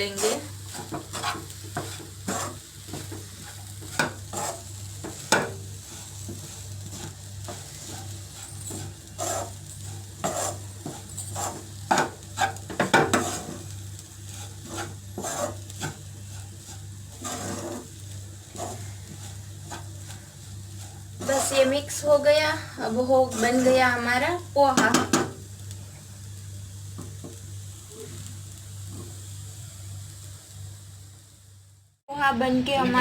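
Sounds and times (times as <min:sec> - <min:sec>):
spoon scraping a pan: 0:00.0 - 0:22.1, 0:22.9 - 0:24.1
light sizzle: 0:00.0 - 0:33.0.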